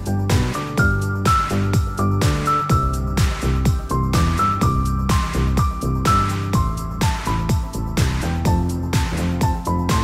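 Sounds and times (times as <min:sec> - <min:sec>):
electronic music with steady beat: 0:00.0 - 0:10.0.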